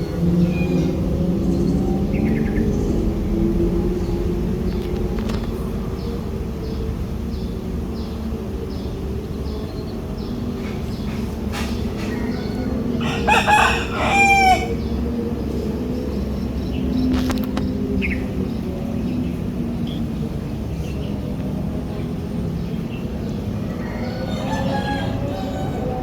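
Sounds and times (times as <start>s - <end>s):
rooster crowing: 12.0s - 15.0s, 23.6s - 26.0s.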